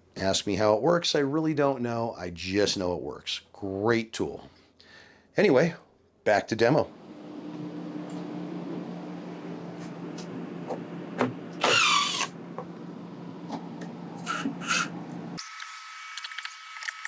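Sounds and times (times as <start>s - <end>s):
machine hum: 6.8s - 15.8s.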